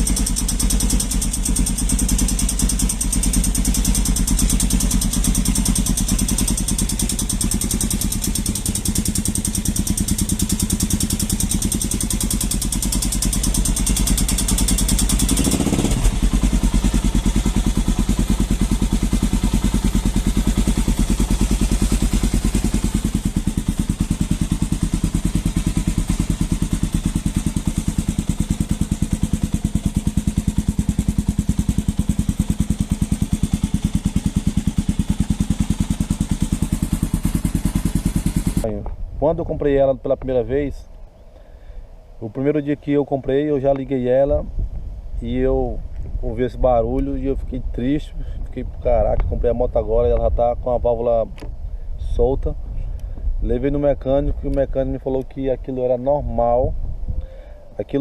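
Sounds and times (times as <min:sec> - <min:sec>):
motorcycle engine idling with clatter: 0:00.0 - 0:58.0.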